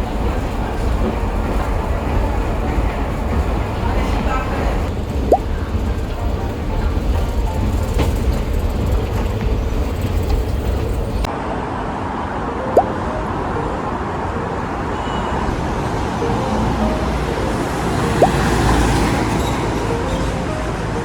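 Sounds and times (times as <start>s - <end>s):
passing cars rumbling: 12.7s - 21.0s.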